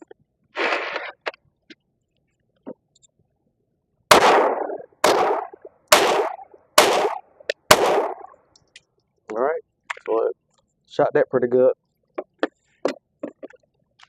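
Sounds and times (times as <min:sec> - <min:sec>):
pistol shots: 0:04.1 - 0:08.4.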